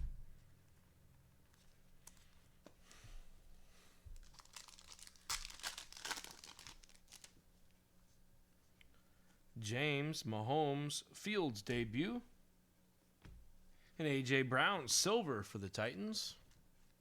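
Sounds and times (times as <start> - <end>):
wrappers tearing and crinkling: 4.2 - 7.4.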